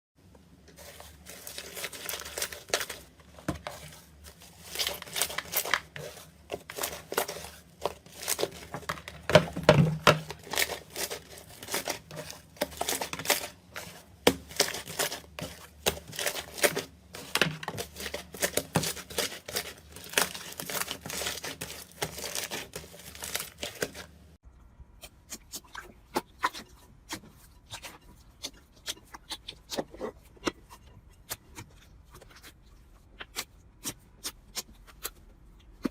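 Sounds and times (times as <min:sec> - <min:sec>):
slime crackling and popping: 0:04.4 - 0:24.1.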